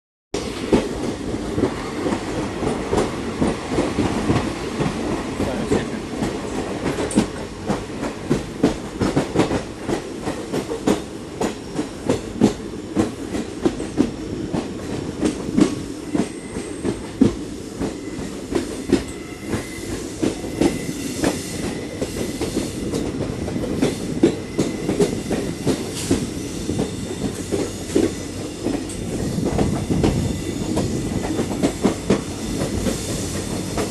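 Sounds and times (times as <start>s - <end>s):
low train rumble: 0.4s - 33.9s
train wheels clacking over rails: 0.4s - 33.9s.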